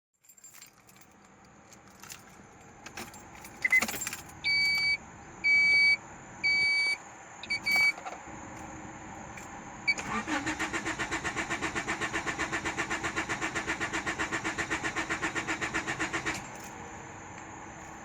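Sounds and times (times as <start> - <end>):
car keys jangling: 0.2 - 4.9, 7.4 - 8.7, 16.3 - 16.8
car warning beeps: 3.6 - 8.2, 9.9 - 10.7.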